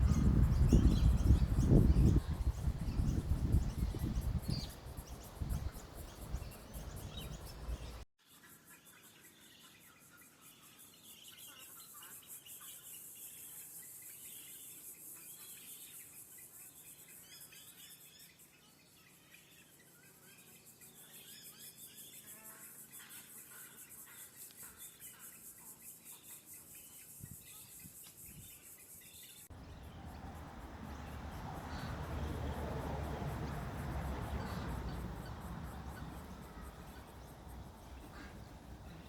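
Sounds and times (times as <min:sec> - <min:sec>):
bird calls: 0:00.0 - 0:08.0, 0:26.2 - 0:39.0
insect chirring: 0:00.0 - 0:08.0, 0:23.8 - 0:39.0.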